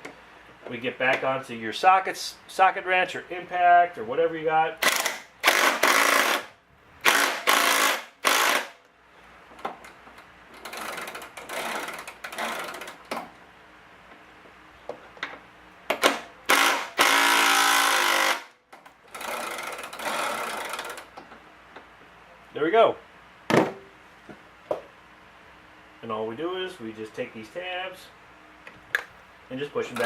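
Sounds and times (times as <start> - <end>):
power impact tool bursts: 4.8 - 8.8, 15.9 - 21.0.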